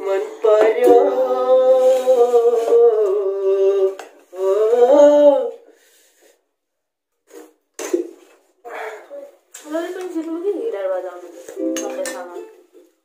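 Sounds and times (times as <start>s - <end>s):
person humming: 0.0s - 5.7s.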